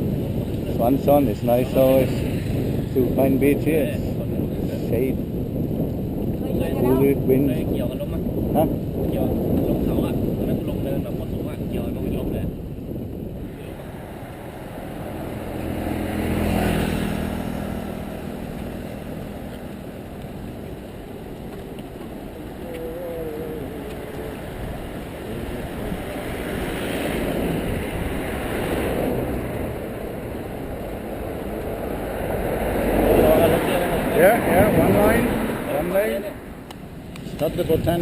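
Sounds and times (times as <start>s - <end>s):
wind rushing on microphone: 0.0s - 38.0s
vehicle engine passing: 13.4s - 37.9s.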